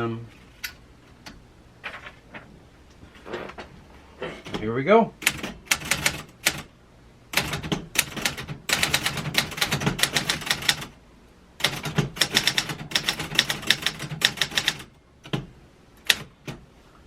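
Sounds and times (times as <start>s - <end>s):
typewriter keys clacking: 7.4s - 10.9s, 11.6s - 14.9s.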